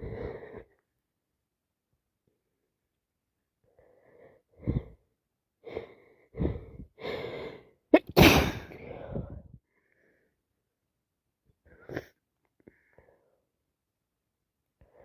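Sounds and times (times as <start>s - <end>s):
gasping breaths: 5.6s - 7.8s
person sneezing: 8.0s - 9.1s.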